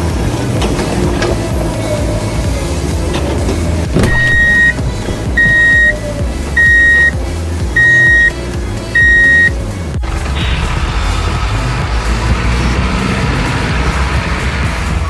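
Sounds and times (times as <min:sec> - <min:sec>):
background music: 0:00.0 - 0:15.0
vehicle reversing alarm beeping: 0:04.0 - 0:07.2, 0:07.8 - 0:08.4, 0:09.0 - 0:09.6.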